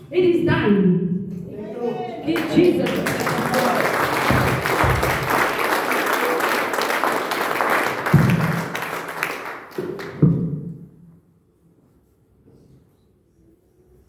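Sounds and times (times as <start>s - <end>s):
congregation clapping and cheering: 2.2s - 10.3s.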